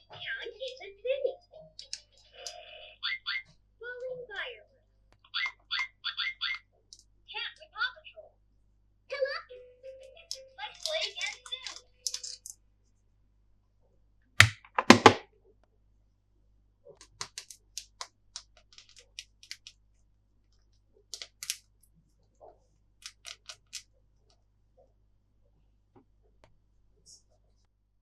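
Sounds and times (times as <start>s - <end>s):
plastic packaging cracks: 21.2s - 21.6s.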